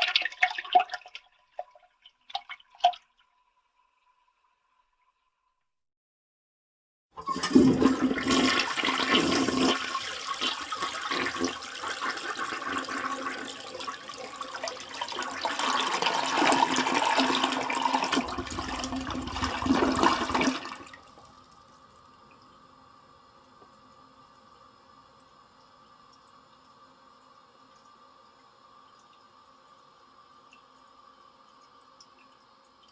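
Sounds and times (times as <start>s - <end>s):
toilet flushing: 0.0s - 1.7s, 7.2s - 21.5s
faint steady hiss: 8.4s - 32.9s.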